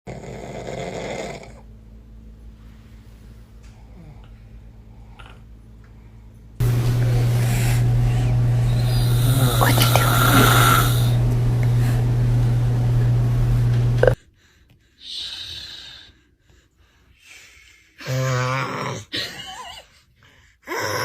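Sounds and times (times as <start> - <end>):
person snoring: 0.1 - 1.6, 7.0 - 11.9, 18.0 - 19.1
steady low hum: 0.1 - 14.6.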